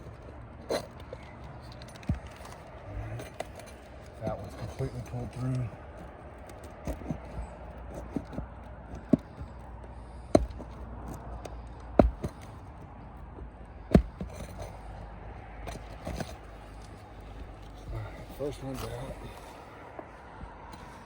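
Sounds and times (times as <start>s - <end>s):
tool knocking under roof shingle: 5.8s - 14.7s.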